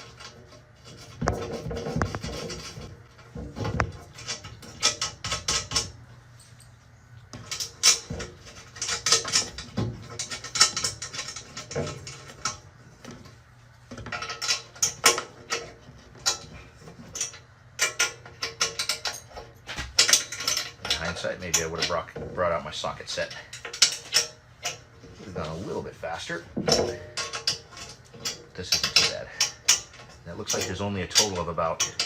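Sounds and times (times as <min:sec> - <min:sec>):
wrench clicking and scraping: 0:07.4 - 0:12.6, 0:23.1 - 0:24.9, 0:26.6 - 0:32.0.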